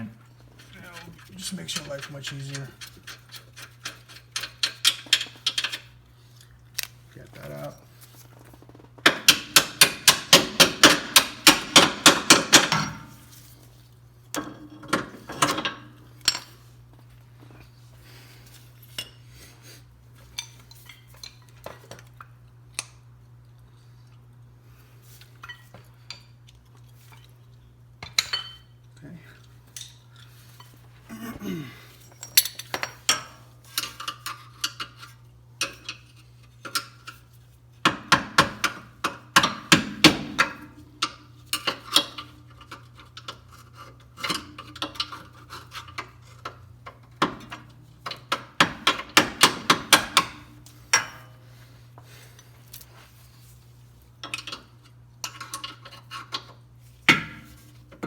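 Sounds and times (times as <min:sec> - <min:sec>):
metal parts and tools clinking: 0:32.0 - 0:34.9.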